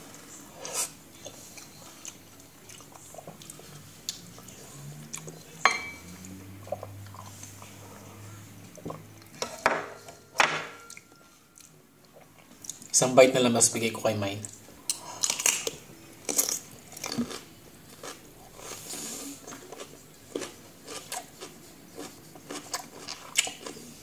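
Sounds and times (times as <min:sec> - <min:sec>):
cutlery clinking against dishes: 0:05.6 - 0:06.1.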